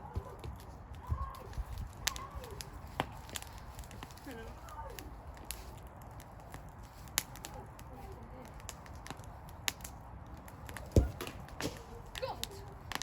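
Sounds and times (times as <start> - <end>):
wood fire crackling: 0.0 - 13.0
sharp snaps and pops: 0.4 - 13.0.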